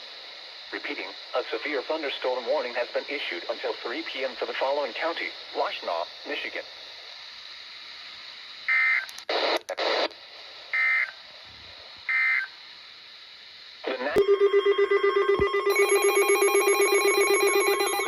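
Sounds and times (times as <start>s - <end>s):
static bursts: 0.7s - 11.1s
pulsing electronic alert tone: 14.2s - 18.0s.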